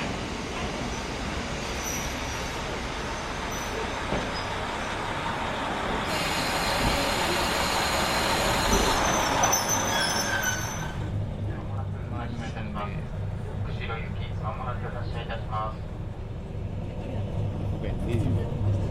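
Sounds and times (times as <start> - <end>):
train rumbling on rails: 0.0 - 18.9
faint high squeals: 8.9 - 11.1.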